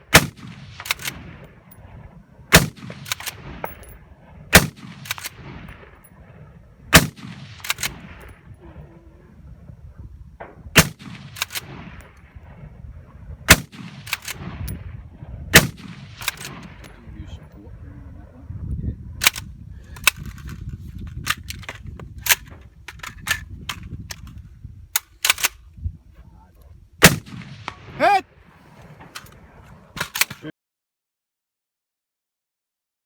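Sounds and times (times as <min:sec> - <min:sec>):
rifle shots: 0:00.1 - 0:01.5, 0:02.5 - 0:03.9, 0:04.5 - 0:06.2, 0:06.9 - 0:08.4, 0:10.4 - 0:12.2, 0:13.5 - 0:16.8, 0:27.0 - 0:28.2.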